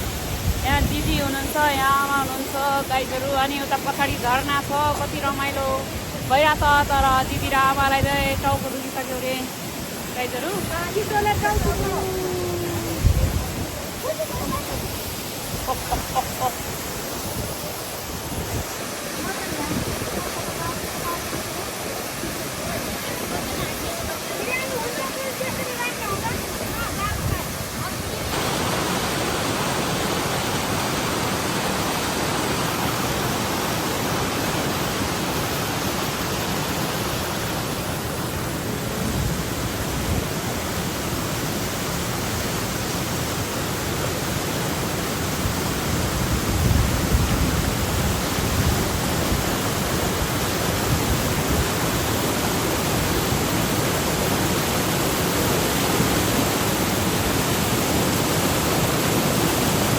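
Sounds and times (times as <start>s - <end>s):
wind buffeting microphone: 0.0s - 2.1s, 10.4s - 40.9s, 45.3s - 54.3s
waterfall roaring: 0.0s - 59.9s.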